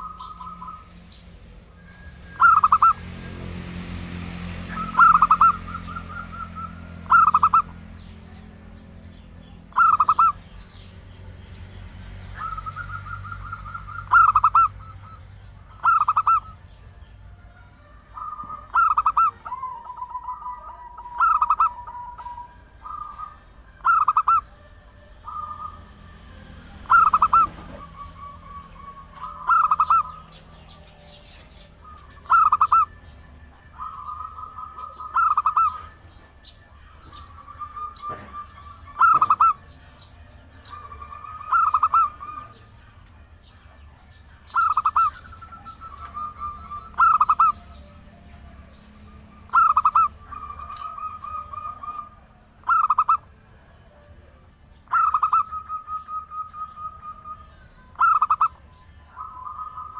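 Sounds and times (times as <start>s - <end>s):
dove soft trills: 0.0s - 11.0s, 11.9s - 43.8s, 44.4s - 59.9s
dove rapid cooing: 2.3s - 3.2s, 4.6s - 7.8s, 9.7s - 10.4s, 12.4s - 15.2s, 15.8s - 16.6s, 17.8s - 24.6s, 25.2s - 30.4s, 31.8s - 33.0s, 33.8s - 36.0s, 37.1s - 39.6s, 40.6s - 42.7s, 44.5s - 47.8s, 49.4s - 53.4s, 54.9s - 56.8s, 57.4s - 59.9s.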